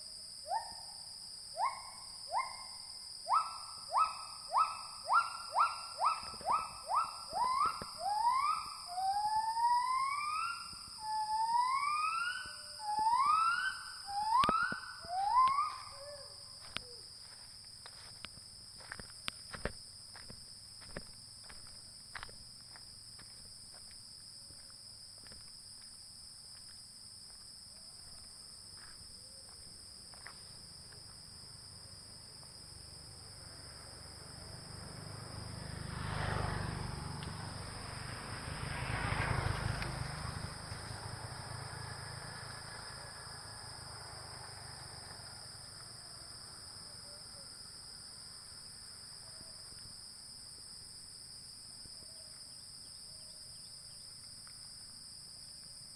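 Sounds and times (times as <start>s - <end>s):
crickets chirring: 0.0s - 55.9s.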